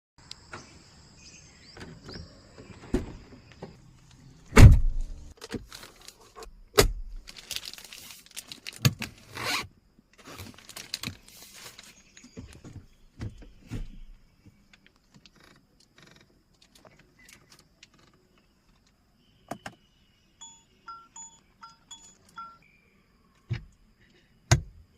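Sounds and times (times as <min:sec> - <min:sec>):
car door clunks and clicks: 0:04.5 - 0:05.6, 0:24.5 - 0:24.8.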